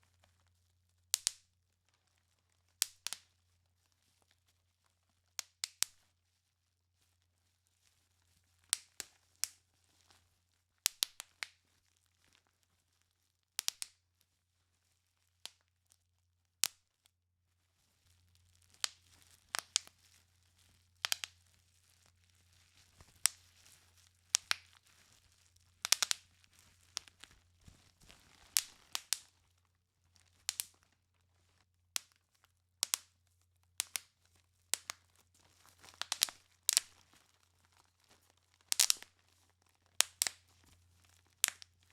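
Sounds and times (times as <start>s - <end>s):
bubble wrap popping: 0.1s - 14.4s, 17.8s - 41.9s
plastic sheet crinkling: 17.8s - 32.5s, 33.8s - 41.9s.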